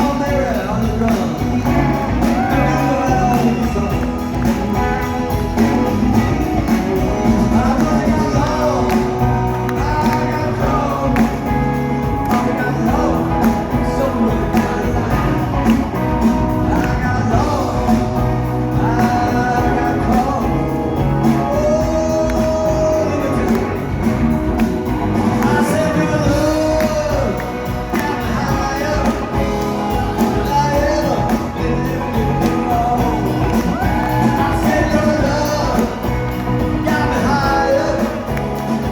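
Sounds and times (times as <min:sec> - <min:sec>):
person singing: 0:00.0 - 0:38.9
rock and roll band playing: 0:00.0 - 0:38.9.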